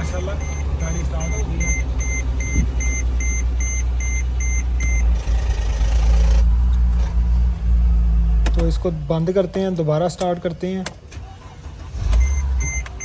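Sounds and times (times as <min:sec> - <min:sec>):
warning chime beeping: 0:00.0 - 0:05.1
car engine idling: 0:00.0 - 0:13.0.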